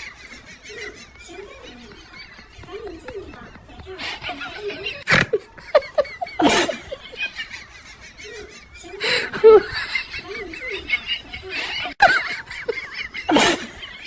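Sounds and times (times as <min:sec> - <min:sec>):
person laughing: 0:04.0 - 0:07.5, 0:08.2 - 0:14.0.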